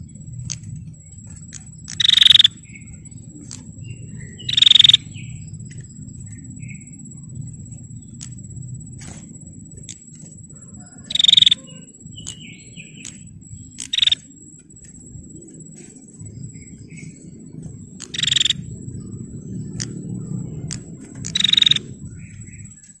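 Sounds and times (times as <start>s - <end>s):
bird buzzy trills: 0.0s - 23.0s
low background rumble: 0.0s - 23.0s
thin high whine: 0.0s - 23.0s.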